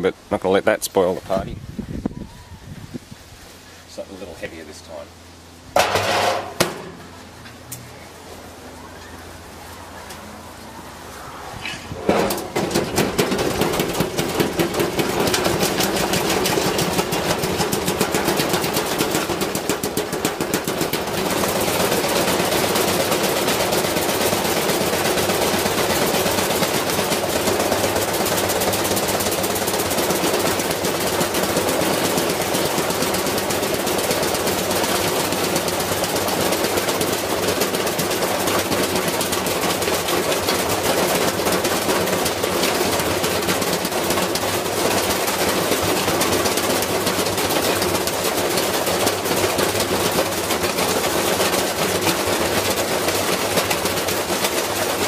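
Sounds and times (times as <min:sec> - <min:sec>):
washing machine running: 0:05.6 - 0:07.4, 0:11.9 - 0:55.0
brick clattering in drum: 0:05.8 - 0:07.0.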